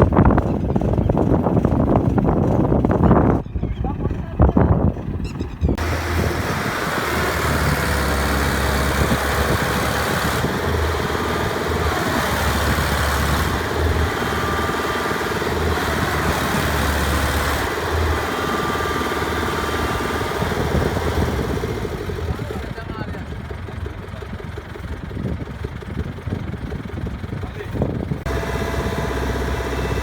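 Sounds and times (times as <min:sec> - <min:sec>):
diesel engine rumbling: 0:00.0 - 0:30.0.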